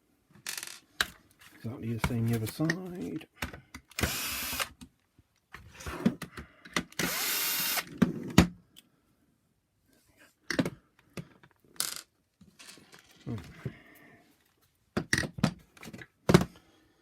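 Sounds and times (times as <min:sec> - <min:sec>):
electric screwdriver running: 0:04.0 - 0:04.7, 0:07.0 - 0:07.9.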